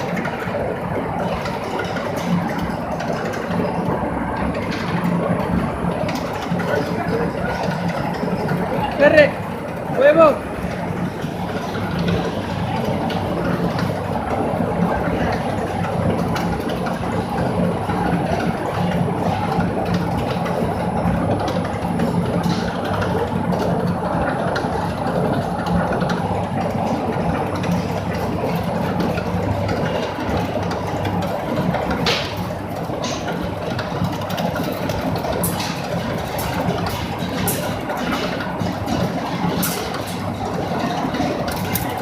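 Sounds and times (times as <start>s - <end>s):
welding machine mechanical drone: 0.0s - 42.0s.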